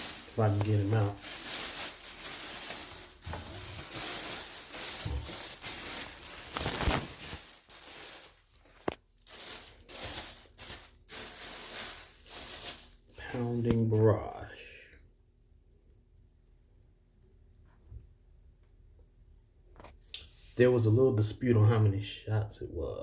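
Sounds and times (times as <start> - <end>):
packaging rustling and crinkling: 0.0 - 13.9.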